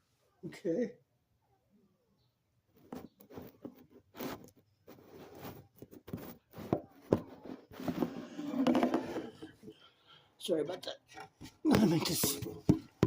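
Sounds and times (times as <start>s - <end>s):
objects being handled: 2.7s - 9.8s, 10.7s - 13.0s.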